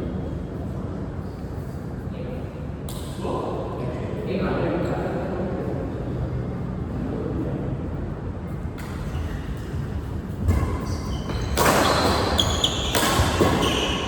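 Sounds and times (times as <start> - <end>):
racket hitting shuttlecock: 10.4 - 14.0.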